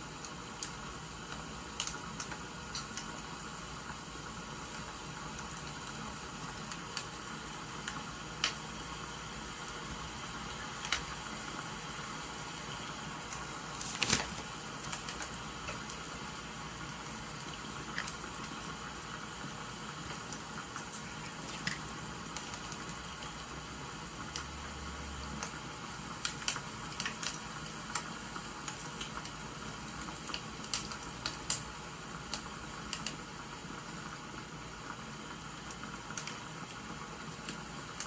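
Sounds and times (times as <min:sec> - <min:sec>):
wood fire crackling and popping: 0:00.2 - 0:03.2, 0:05.4 - 0:08.6, 0:10.8 - 0:11.2, 0:30.0 - 0:31.7.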